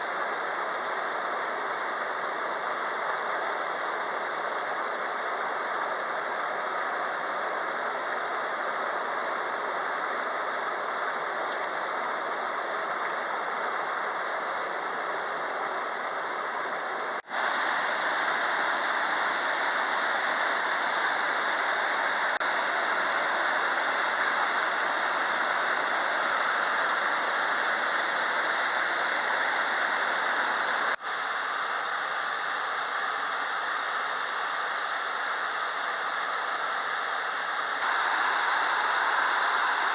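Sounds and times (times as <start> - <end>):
waterfall rushing: 17.3 - 31.0, 37.8 - 39.9.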